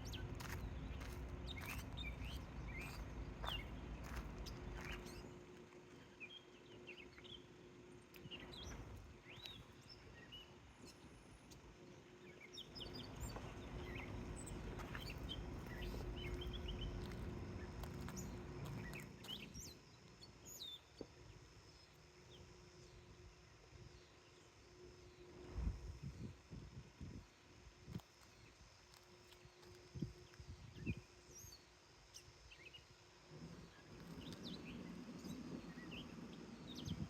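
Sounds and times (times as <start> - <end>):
low background rumble: 0.0 - 24.1
songbirds chirping: 0.0 - 25.5, 28.1 - 37.0.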